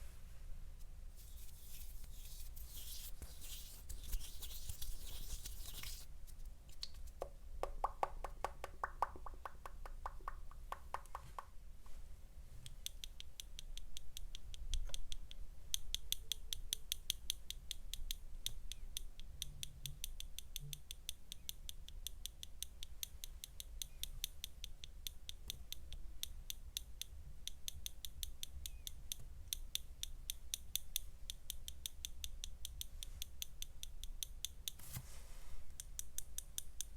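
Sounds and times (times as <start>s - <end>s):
rustling hiss: 1.2s - 6.5s.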